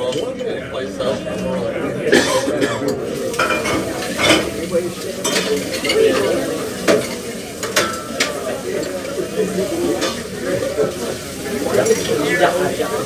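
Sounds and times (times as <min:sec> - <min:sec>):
murmur of voices: 0:00.0 - 0:13.0
glassware and ice clinking: 0:02.1 - 0:04.5, 0:05.2 - 0:08.4.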